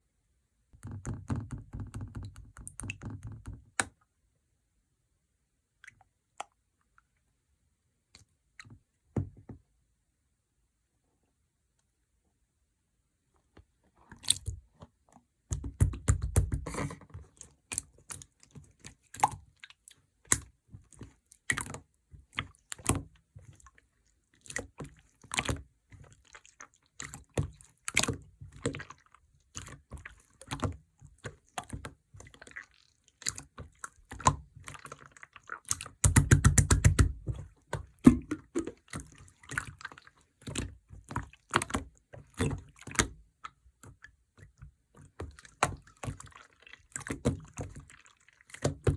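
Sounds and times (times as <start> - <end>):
slime squishing with sticky clicks: 14.1 - 48.9
air bubbles popping: 35.4 - 39.0.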